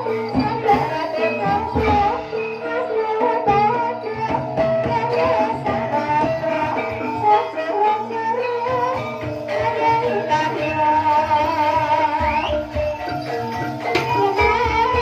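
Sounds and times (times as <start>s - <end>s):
wavering melody line: 0.0s - 15.0s
drum strokes: 8.6s - 15.0s.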